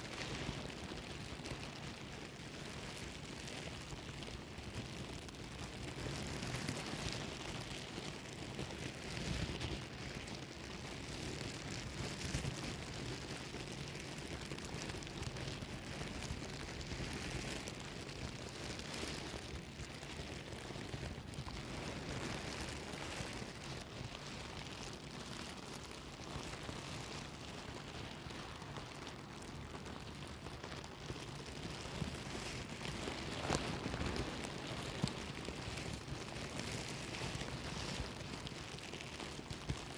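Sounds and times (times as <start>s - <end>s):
plastic bag rustling: 32.0s - 39.4s.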